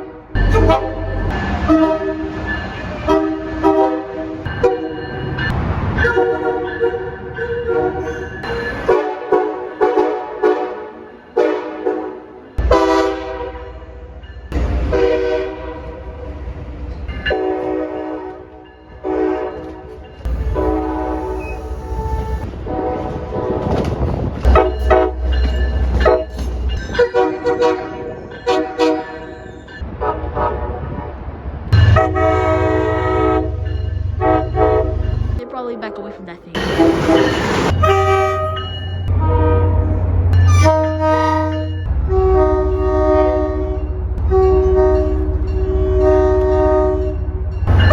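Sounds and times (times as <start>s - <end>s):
train air horn blasts: 0.0s - 2.3s, 3.0s - 4.4s, 8.9s - 14.0s, 14.6s - 16.2s, 17.3s - 19.6s, 20.3s - 23.6s, 27.0s - 29.3s, 31.8s - 35.0s, 36.6s - 47.2s
passing train rumble: 0.0s - 47.9s.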